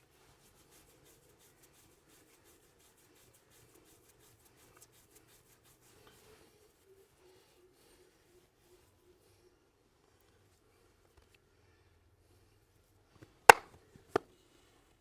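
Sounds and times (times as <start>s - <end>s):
hands rubbing skin: 0.0s - 9.0s.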